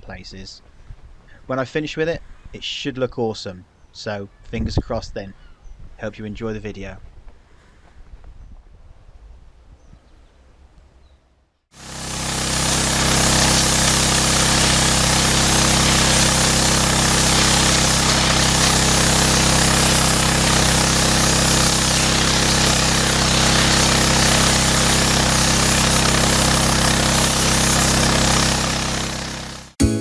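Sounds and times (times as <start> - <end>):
high-pressure water jet hissing: 11.8 - 29.8
pressure washer motor hum: 11.8 - 30.0.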